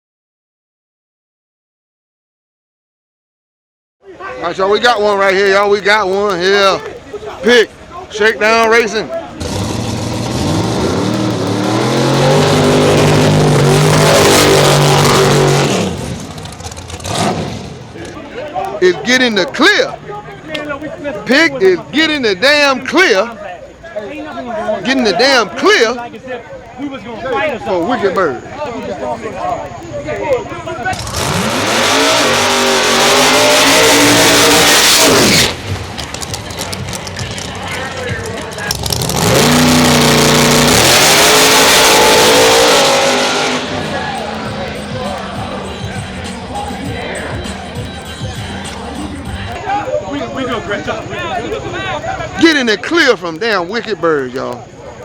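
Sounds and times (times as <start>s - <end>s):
race car engine revving: 9.3s - 18.0s, 30.8s - 49.5s.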